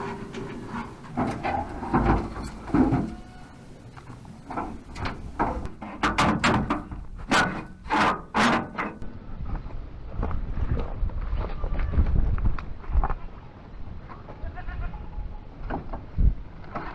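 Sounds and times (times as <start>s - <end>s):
sharp knocks and clunks: 0.0s - 3.6s, 4.5s - 9.0s
heavy thumps: 0.0s - 9.0s.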